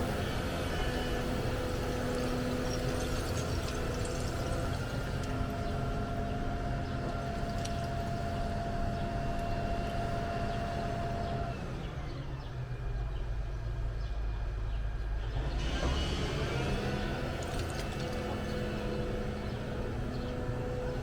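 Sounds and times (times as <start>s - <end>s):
excavator hydraulic whine: 0.0s - 12.4s, 14.4s - 21.0s
excavator engine rumble: 0.0s - 21.0s.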